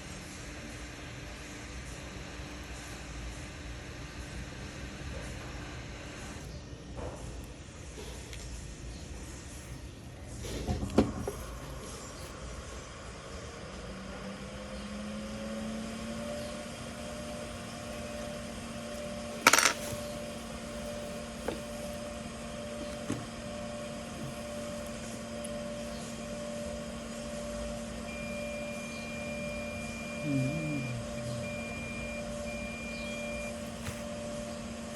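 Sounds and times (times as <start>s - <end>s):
steady hum rising in pitch: 25.0s - 33.5s.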